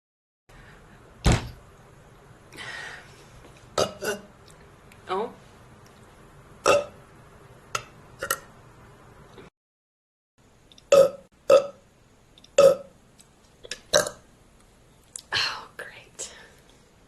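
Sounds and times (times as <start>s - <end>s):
woman burping: 3.8s - 4.3s.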